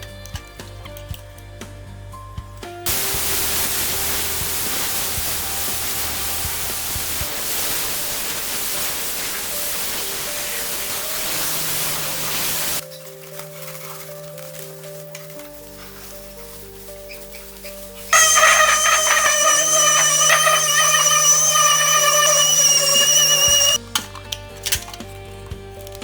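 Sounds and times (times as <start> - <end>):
background music: 0.0 - 26.0
compressed air spray hissing: 2.9 - 12.8.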